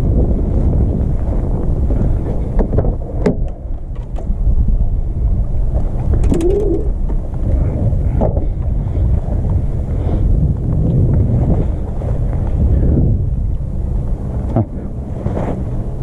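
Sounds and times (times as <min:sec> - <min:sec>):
wind buffeting microphone: 0:00.0 - 0:16.0
short wavering tone: 0:06.3 - 0:07.0.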